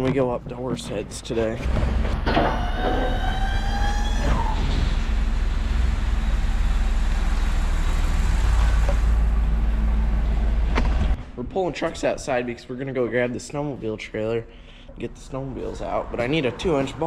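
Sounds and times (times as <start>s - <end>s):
truck engine rumbling: 0.0s - 17.0s
rising whine: 2.0s - 11.4s.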